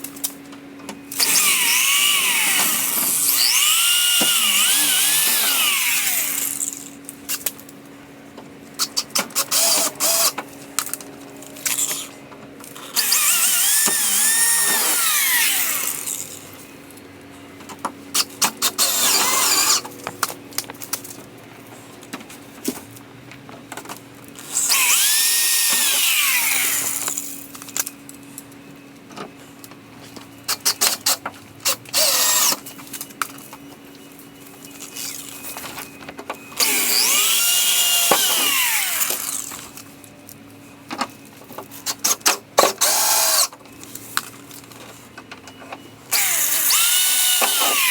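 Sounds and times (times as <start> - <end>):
power drill motor whining: 1.1 - 7.5, 8.8 - 10.4, 11.5 - 16.8, 18.1 - 20.2, 24.4 - 28.0, 30.5 - 32.8, 34.4 - 36.0, 36.6 - 39.9, 41.9 - 43.5, 46.1 - 47.9.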